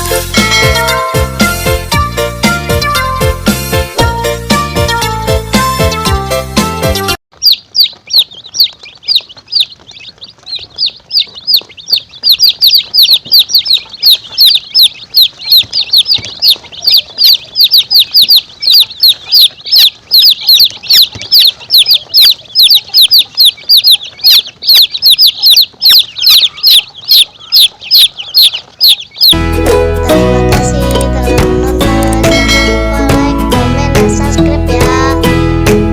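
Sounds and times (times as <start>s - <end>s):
music: 0.0s - 7.2s, 29.3s - 35.9s
chicks peeping: 0.0s - 35.9s.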